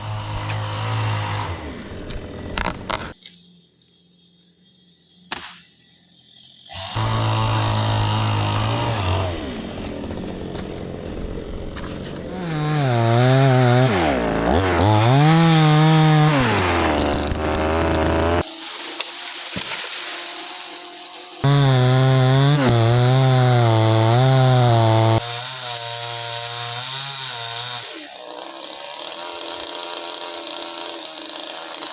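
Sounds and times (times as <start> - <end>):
chainsaw engine running: 0.0 - 3.2, 6.6 - 18.5, 20.6 - 31.9.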